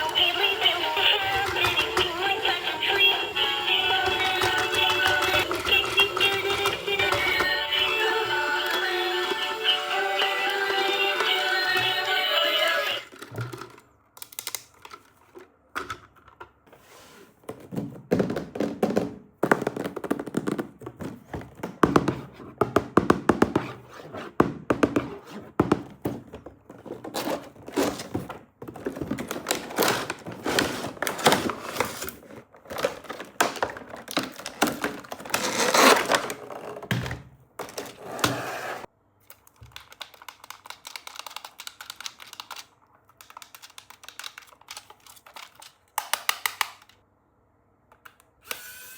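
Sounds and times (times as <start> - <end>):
toy packaging being opened: 0.0 - 15.4, 27.0 - 36.9, 39.3 - 47.0.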